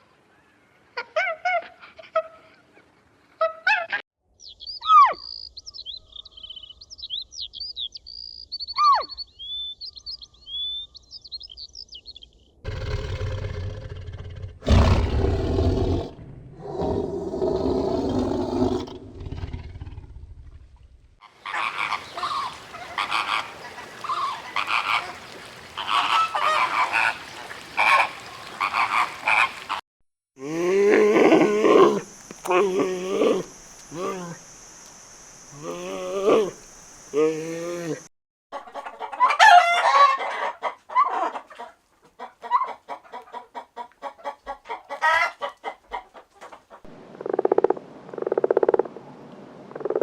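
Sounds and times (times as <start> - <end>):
low rough animal call: 12.7 - 20.8, 30.4 - 34.5, 35.5 - 38.1
chorus of short repeated calls: 31.1 - 34.6, 35.4 - 38.1.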